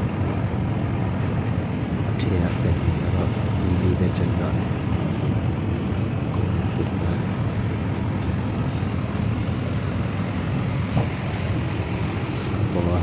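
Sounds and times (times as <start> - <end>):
low engine rumble: 0.0 - 13.0.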